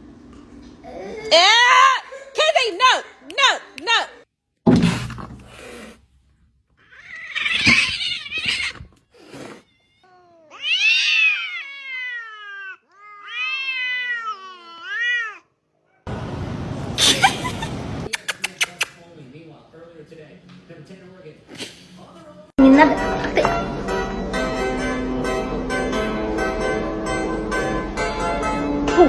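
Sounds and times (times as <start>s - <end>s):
cat yowling: 6.8s - 8.8s, 9.5s - 15.5s.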